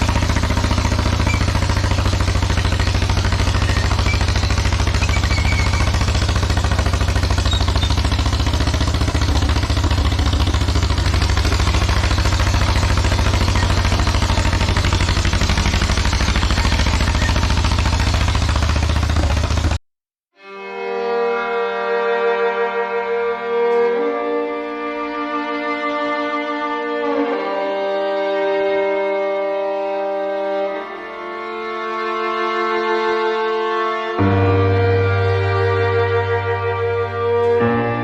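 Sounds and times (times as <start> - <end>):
dozer engine pulsing with clatter: 0.0 - 19.8.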